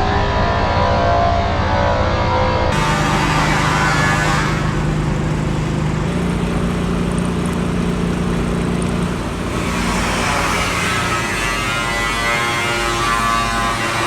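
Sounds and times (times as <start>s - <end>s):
grinding metal cutting noise: 2.7s - 14.0s
milling machine motor hum: 2.8s - 14.0s.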